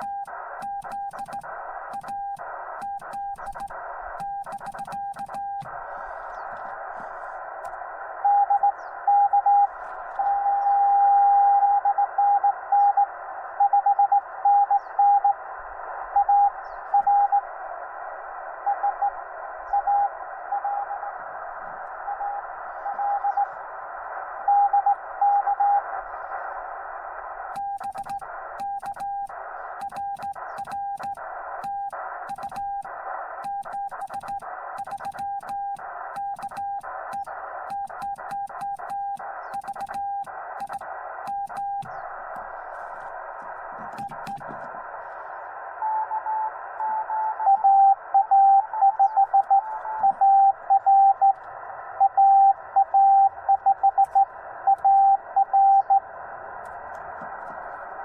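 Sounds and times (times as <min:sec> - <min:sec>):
sharp crackling clicks: 0:00.0 - 0:05.8, 0:27.6 - 0:42.5
radio band hiss: 0:00.0 - 0:11.0, 0:14.2 - 0:58.0.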